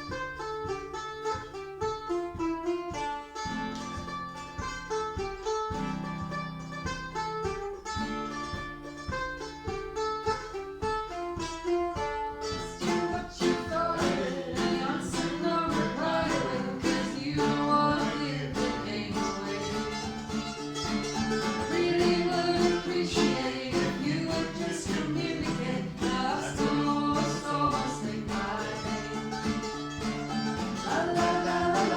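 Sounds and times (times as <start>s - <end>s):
mandolin and plucked strings: 0.0s - 31.9s
person singing: 11.8s - 20.3s, 21.4s - 29.5s, 30.5s - 31.9s.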